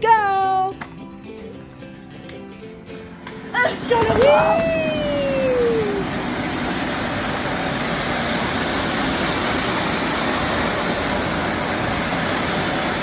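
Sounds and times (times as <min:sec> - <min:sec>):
electric blower fan rushing air: 0:03.1 - 0:13.0.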